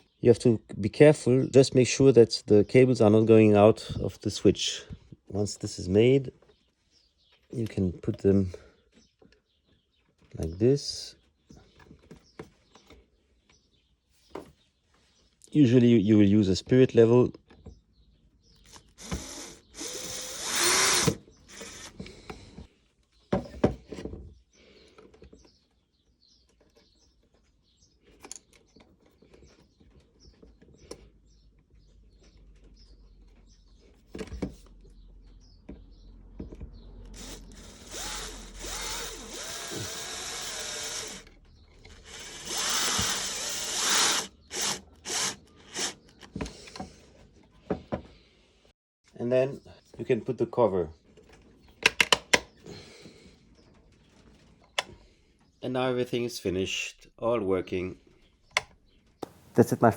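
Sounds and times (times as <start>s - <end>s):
cordless drill driving screws: 18.7s - 22.1s, 37.1s - 46.4s
drill clicks: 18.7s - 22.1s, 37.0s - 46.4s.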